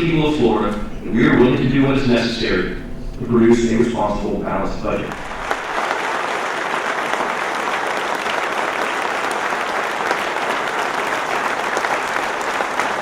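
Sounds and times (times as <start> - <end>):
audience applause: 4.9 - 13.0.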